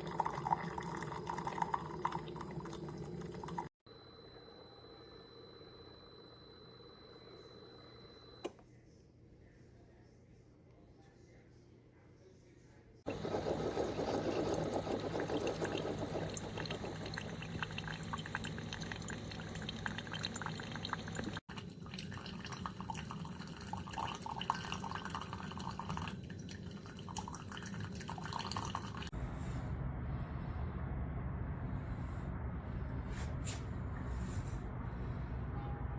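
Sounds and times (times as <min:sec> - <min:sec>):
water streaming into a mug: 0:00.0 - 0:03.8, 0:13.1 - 0:29.1
low steady hum: 0:00.0 - 0:35.9.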